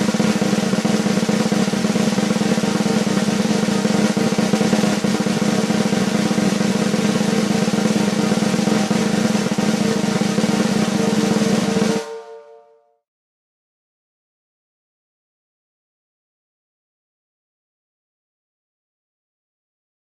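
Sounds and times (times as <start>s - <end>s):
drum roll: 0.0s - 12.6s.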